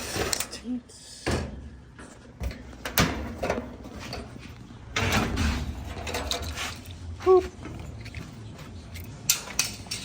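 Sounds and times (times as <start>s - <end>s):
hand tools clicking and knocking: 7.6s - 10.0s.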